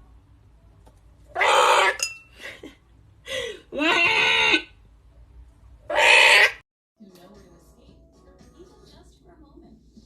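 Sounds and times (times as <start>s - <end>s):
parrot warbling calls: 1.3s - 2.0s, 5.9s - 6.6s
parrot squawking: 1.3s - 2.1s, 3.8s - 4.7s, 5.9s - 6.6s.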